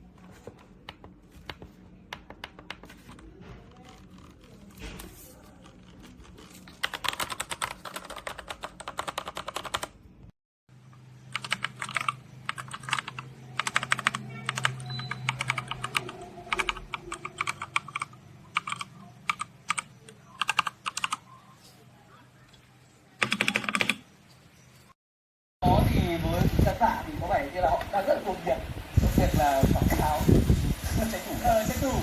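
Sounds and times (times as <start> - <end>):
mechanical keyboard typing: 0.9 - 4.8, 5.4 - 10.0, 11.3 - 21.3, 23.2 - 24.0.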